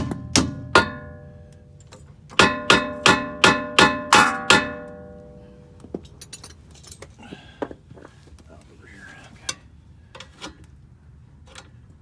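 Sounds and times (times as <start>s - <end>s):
hammer striking steel ringing: 0.0s - 1.7s, 2.4s - 5.8s.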